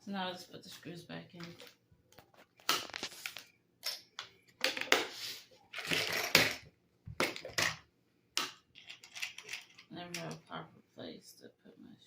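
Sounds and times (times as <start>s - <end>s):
screws and screwdriver clattering on plastic: 5.7s - 7.8s, 8.7s - 10.4s.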